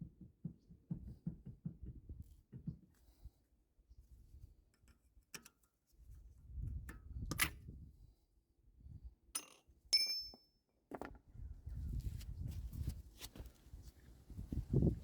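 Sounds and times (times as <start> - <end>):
metal tools clinking: 9.4 - 10.4.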